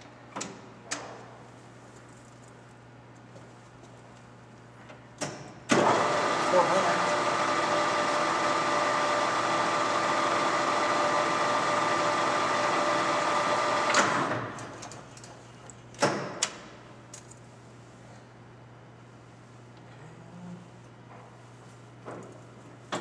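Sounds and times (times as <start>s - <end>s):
lathe machine whine: 5.8s - 13.9s.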